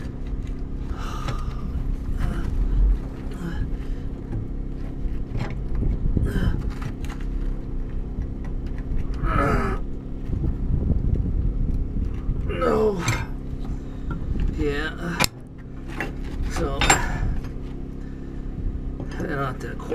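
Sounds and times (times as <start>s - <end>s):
low rumble and hum: 0.0s - 19.9s
person grunting: 0.9s - 3.8s, 6.2s - 6.7s, 9.2s - 9.8s.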